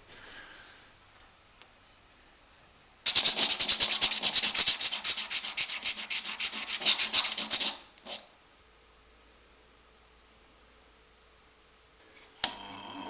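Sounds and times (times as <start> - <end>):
hand sanding metal: 3.1 - 8.3.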